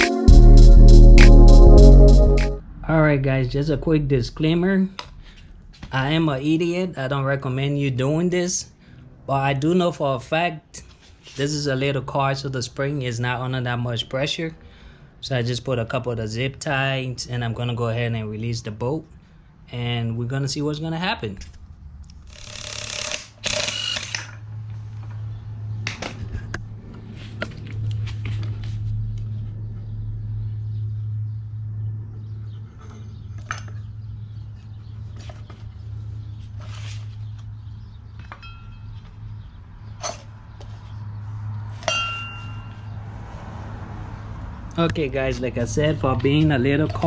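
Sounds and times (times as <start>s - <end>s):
steady low hum: 0.3s - 8.2s.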